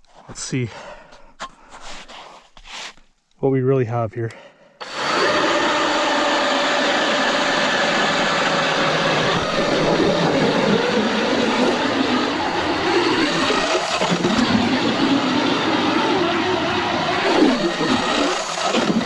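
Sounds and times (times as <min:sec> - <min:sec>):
power ice auger whining: 0:04.8 - 0:19.0.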